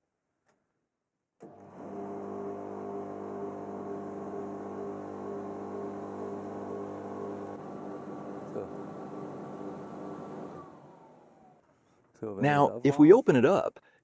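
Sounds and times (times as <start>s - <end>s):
tumble dryer motor humming: 1.4s - 11.6s.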